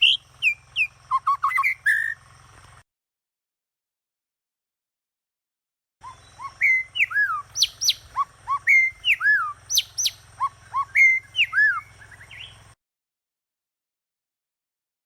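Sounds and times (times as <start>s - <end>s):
songbird singing: 0.0s - 2.8s, 6.0s - 12.8s.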